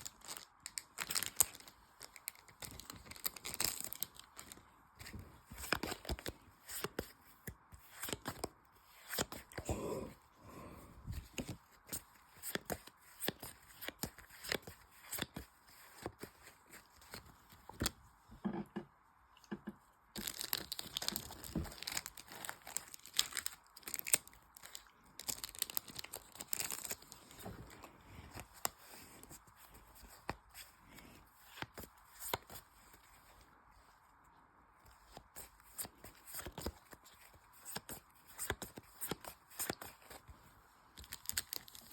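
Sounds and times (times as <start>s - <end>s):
foil wrappers torn and crinkled: 0.0s - 4.6s, 20.2s - 27.4s, 41.0s - 41.9s.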